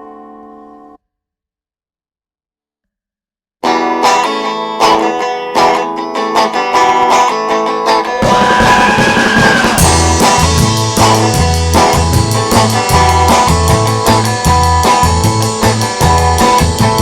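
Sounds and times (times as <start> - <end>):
bass guitar: 3.6 - 17.0
guitar picking quick notes: 3.6 - 17.0
drums: 8.1 - 17.0.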